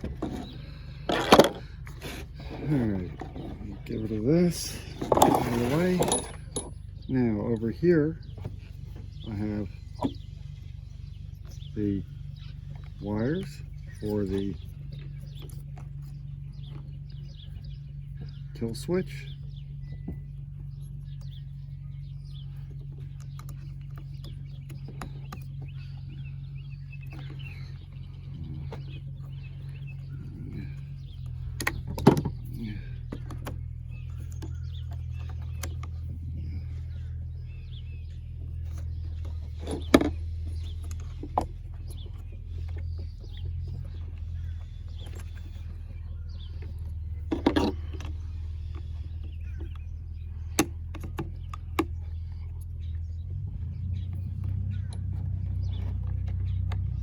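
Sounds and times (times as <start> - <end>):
small parts rattling: 0.0 - 3.8, 4.5 - 6.8
birds chirping: 0.0 - 57.0
steady low hum: 0.0 - 57.0.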